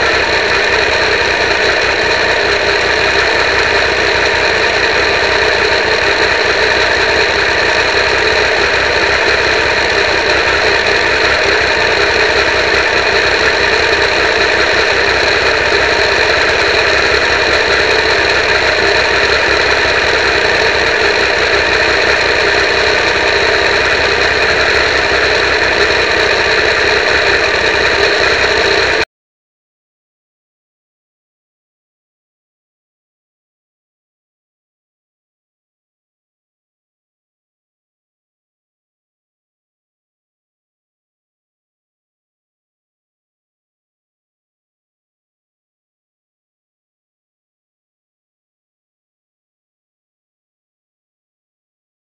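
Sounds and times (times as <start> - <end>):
motorcycle engine droning: 0.0 - 29.1.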